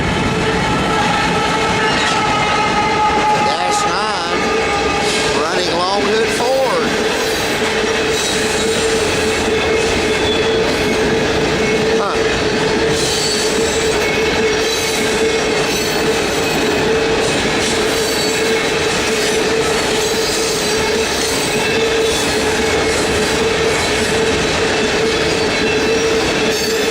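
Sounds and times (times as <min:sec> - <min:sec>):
train wheels rumbling on rail: 0:00.0 - 0:26.9
train wheel squeal: 0:00.8 - 0:05.6, 0:06.4 - 0:26.9.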